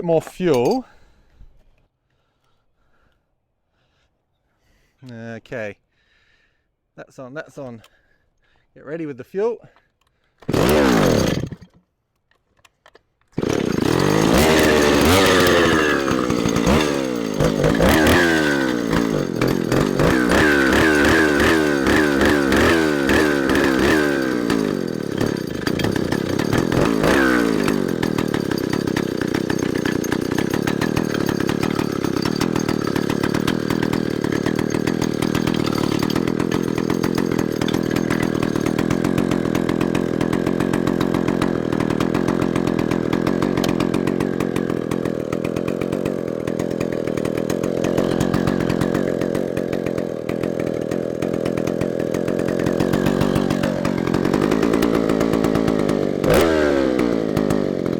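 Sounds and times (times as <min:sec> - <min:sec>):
chainsaw engine revving: 0:10.4 - 0:11.8, 0:13.4 - 0:57.9.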